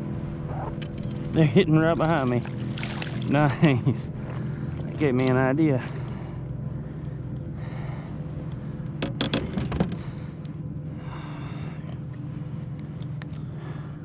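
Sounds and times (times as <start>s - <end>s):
steady low hum: 0.0s - 14.0s
man breathing heavily: 5.8s - 9.0s, 9.9s - 14.0s.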